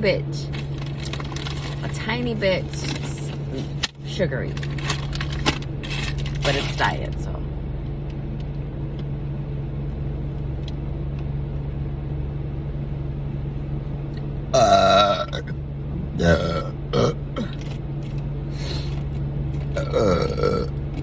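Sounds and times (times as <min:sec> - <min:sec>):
person burping loudly: 0:14.6 - 0:17.6, 0:19.8 - 0:20.8.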